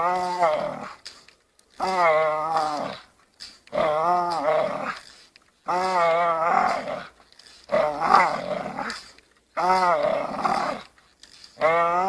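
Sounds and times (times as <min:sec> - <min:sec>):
dog growling: 0:00.0 - 0:01.0, 0:01.8 - 0:03.1, 0:03.7 - 0:10.9, 0:11.5 - 0:12.0.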